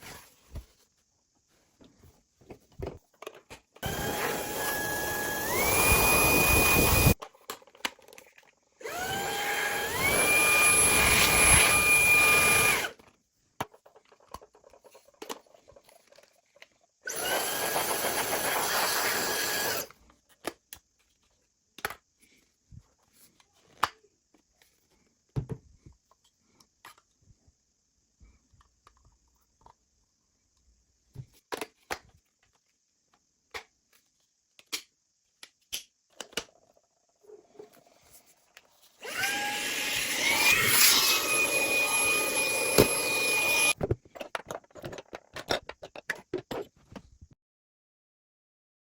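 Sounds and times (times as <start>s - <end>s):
handheld vacuum motor whine: 3.8s - 7.2s, 8.8s - 13.0s, 17.1s - 20.0s, 39.0s - 43.8s.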